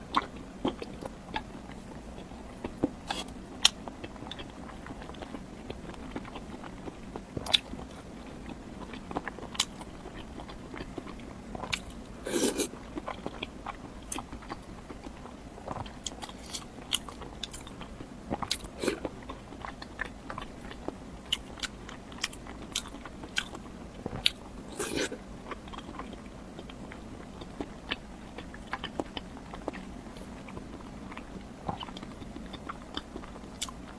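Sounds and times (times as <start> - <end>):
person biting and chewing food: 9.2 - 13.5, 18.4 - 19.8, 21.3 - 26.7.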